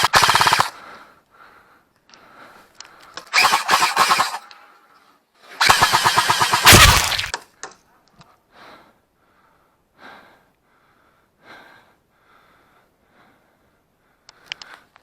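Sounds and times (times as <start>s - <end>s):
person breathing hard: 0.7s - 3.3s, 8.4s - 15.0s
faint clicks: 1.2s - 3.3s, 14.2s - 15.0s.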